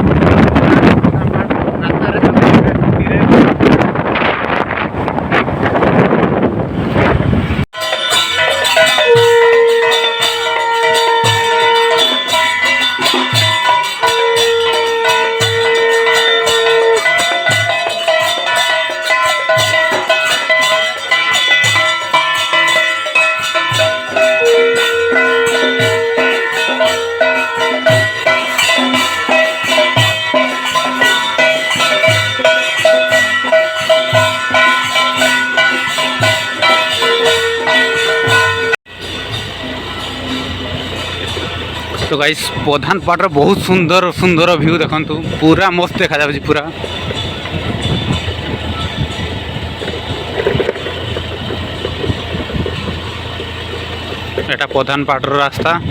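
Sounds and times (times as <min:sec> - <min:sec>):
instrumental music with steady beat: 0:07.7 - 0:42.6
long held notes: 0:07.8 - 0:44.0
quick rattling percussion: 0:07.8 - 0:54.6.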